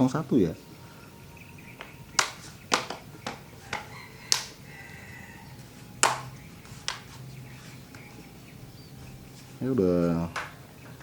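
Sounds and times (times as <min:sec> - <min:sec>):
plastic clips snapping: 0:02.1 - 0:04.6, 0:06.0 - 0:07.1.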